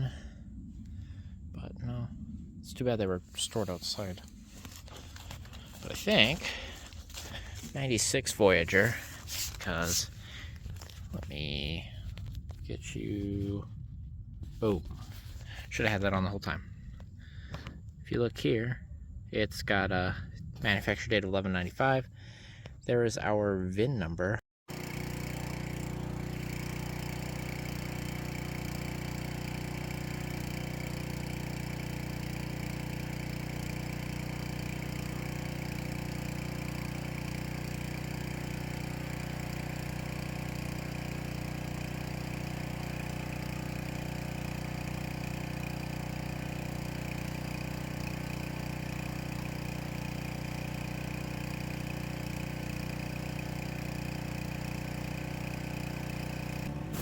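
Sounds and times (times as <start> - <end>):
small petrol engine running: 3.5 - 11.3, 24.7 - 57.0.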